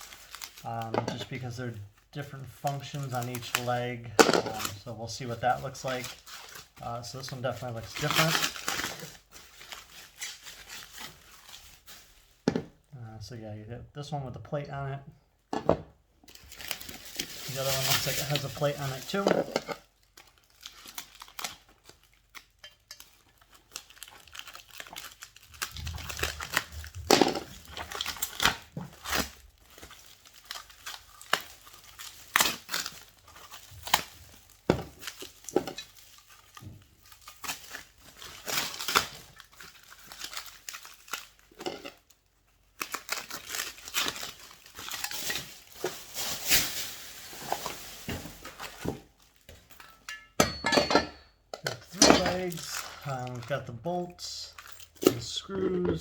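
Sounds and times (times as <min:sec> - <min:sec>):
plastic and paper wrapping crinkling: 0:00.0 - 0:12.9, 0:16.2 - 0:50.4, 0:51.7 - 0:56.0.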